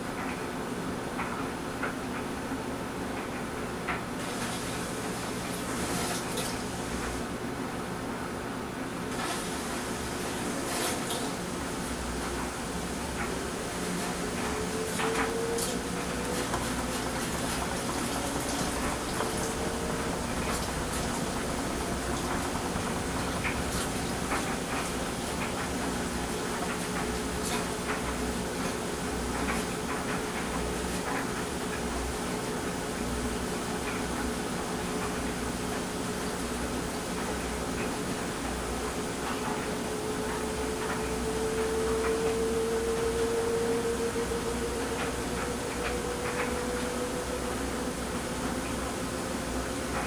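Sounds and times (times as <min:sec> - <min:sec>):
washing machine drone: 0:00.0 - 0:50.0
electric dryer running: 0:04.1 - 0:08.1, 0:08.9 - 0:50.0.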